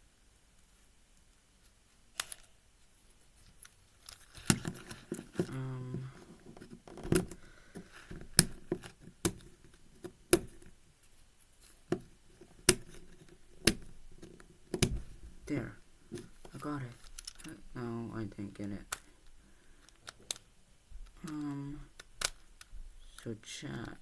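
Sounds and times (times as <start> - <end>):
tape peeling and rustling: 0.6 - 19.2
fingernails clicking on plastic cube: 3.6 - 10.8, 11.6 - 24.0.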